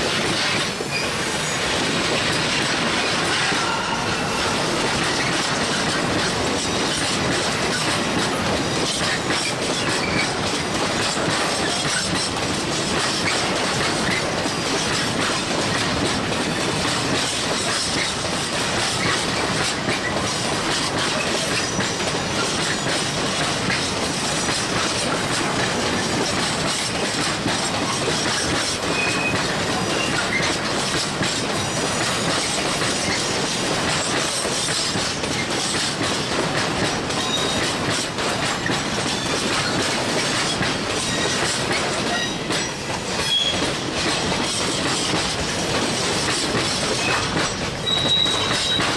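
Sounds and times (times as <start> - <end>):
train wheels clattering over joints: 0.0 - 48.9.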